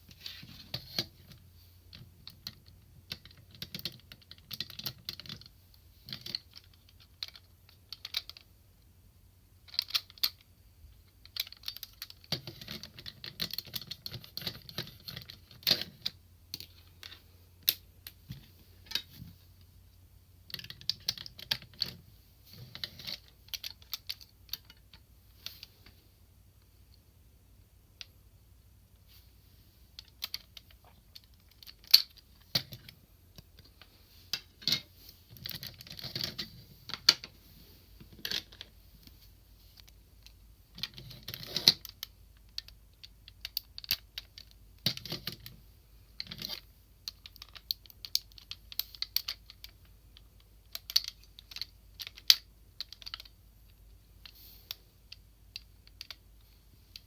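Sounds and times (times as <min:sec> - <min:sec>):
plastic toy parts clicking: 0:00.7 - 0:05.5, 0:06.1 - 0:08.5, 0:09.6 - 0:10.4, 0:11.2 - 0:19.1, 0:20.5 - 0:22.0, 0:22.7 - 0:25.7, 0:30.0 - 0:37.3, 0:39.8 - 0:45.6, 0:46.2 - 0:53.4, 0:54.2 - 0:56.3.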